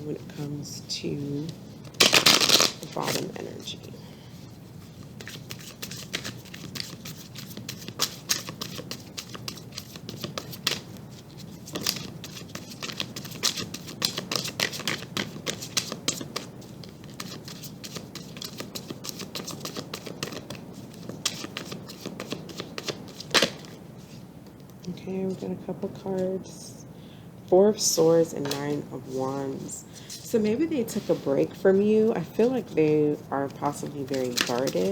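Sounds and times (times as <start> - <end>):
cards being shuffled: 1.9 - 3.4, 4.8 - 24.2, 33.5 - 34.9.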